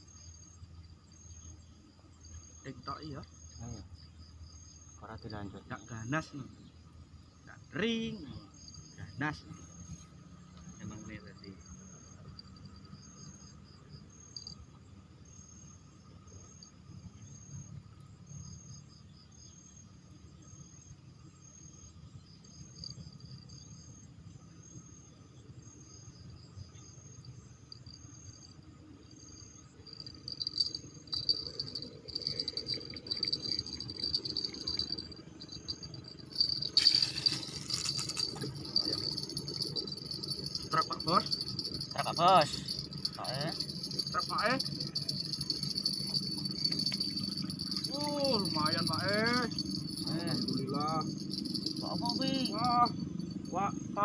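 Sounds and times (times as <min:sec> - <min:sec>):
insects chirping: 0:00.0 - 0:54.0
shrill insect trill: 0:00.0 - 0:54.0
clicking and rattling: 0:30.0 - 0:53.1.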